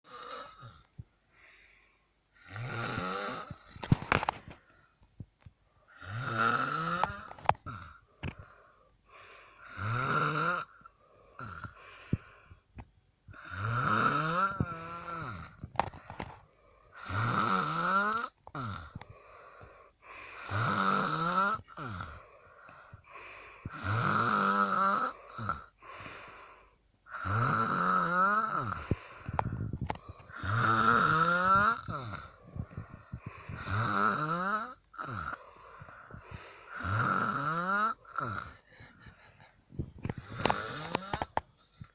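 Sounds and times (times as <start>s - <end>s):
girl snoring loudly: 0.1s - 0.8s, 2.4s - 4.2s, 6.0s - 8.0s, 9.6s - 10.8s, 11.4s - 11.8s, 13.3s - 16.3s, 17.0s - 19.0s, 20.1s - 22.3s, 22.9s - 26.5s, 27.1s - 38.7s, 40.0s - 41.4s
soft breath: 0.4s - 2.5s, 7.9s - 9.7s, 10.9s - 12.7s, 18.9s - 20.6s, 22.0s - 23.8s, 25.1s - 26.8s, 28.6s - 30.6s, 31.5s - 34.0s, 34.8s - 36.9s.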